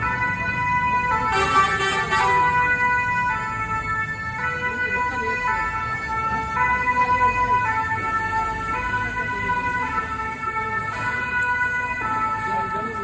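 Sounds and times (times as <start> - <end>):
fire engine two-tone siren: 0.0 - 13.0.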